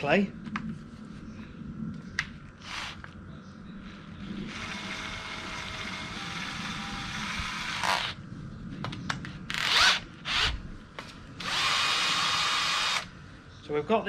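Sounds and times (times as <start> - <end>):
cordless drill whining: 4.5 - 8.2, 9.5 - 10.6, 11.4 - 13.1
drill clicks: 11.4 - 13.1.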